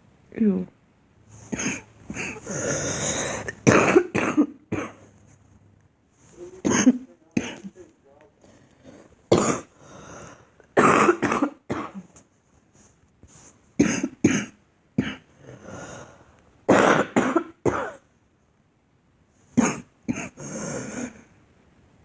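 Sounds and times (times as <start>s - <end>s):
quiet breaths: 1.2s - 3.6s, 4.9s - 10.8s, 12.0s - 13.8s, 15.2s - 16.7s, 19.3s - 21.5s
girl coughing: 1.5s - 5.1s, 6.6s - 7.7s, 9.3s - 9.7s, 10.8s - 12.2s, 13.8s - 15.3s, 16.7s - 18.0s, 19.6s - 20.5s.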